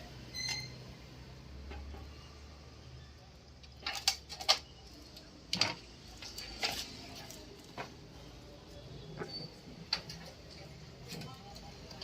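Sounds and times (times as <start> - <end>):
brief squeak: 0.3 - 0.9.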